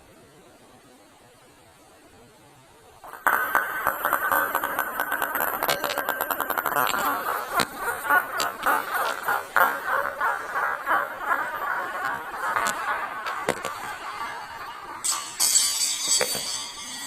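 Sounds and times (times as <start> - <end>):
container lid squeaking: 3.1 - 15.1.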